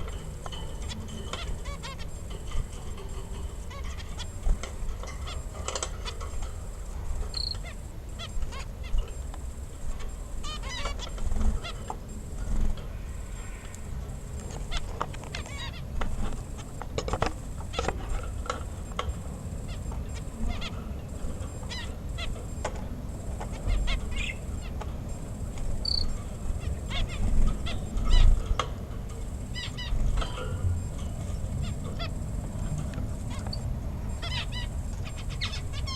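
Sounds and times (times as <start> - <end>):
birds calling: 0.0 - 35.9
high bird chirps: 7.3 - 9.3, 23.5 - 24.8, 25.8 - 28.6, 30.8 - 35.9.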